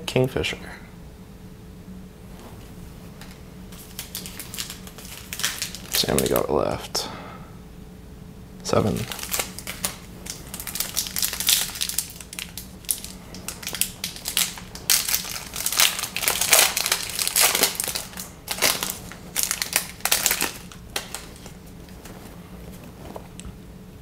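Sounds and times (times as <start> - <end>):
plastic wrapper crinkling: 3.2 - 6.5, 8.9 - 23.5.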